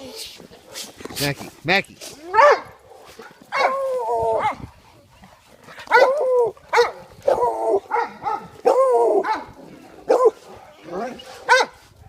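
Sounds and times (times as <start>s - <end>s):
dog barking: 2.3s - 3.8s, 5.8s - 11.8s.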